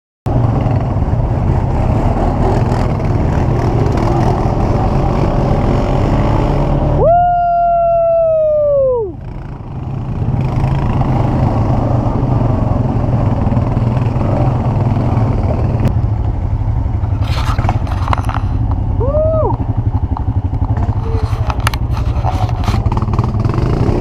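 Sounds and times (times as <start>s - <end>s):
atv engine running: 0.3s - 7.1s, 8.1s - 24.0s
knocks and clatters: 17.2s - 18.8s.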